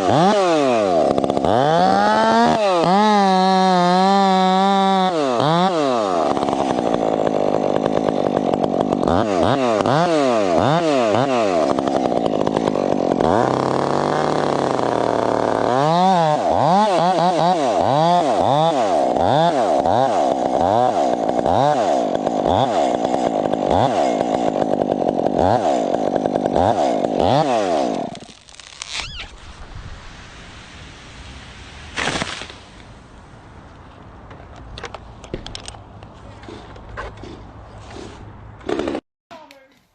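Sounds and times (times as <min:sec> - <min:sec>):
chainsaw running: 0:00.0 - 0:29.2, 0:38.6 - 0:39.0.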